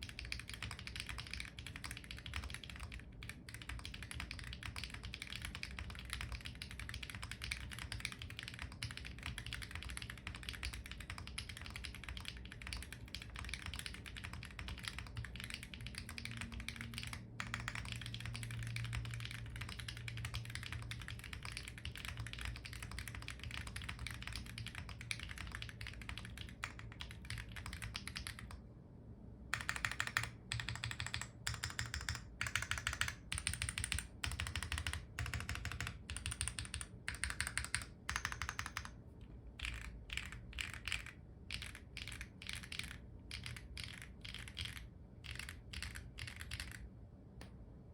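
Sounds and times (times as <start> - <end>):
fast mechanical keyboard typing: 0.0 - 28.6, 29.5 - 46.9.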